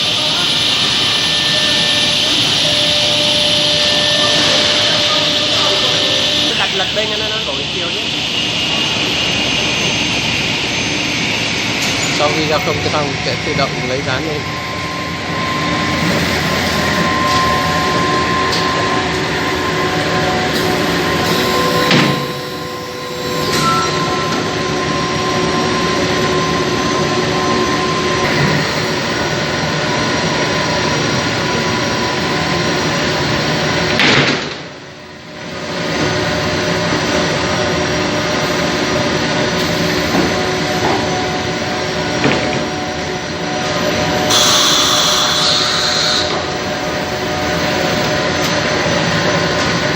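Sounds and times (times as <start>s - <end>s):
router spindle running: 0.0s - 10.7s, 11.3s - 26.3s, 35.9s - 49.9s.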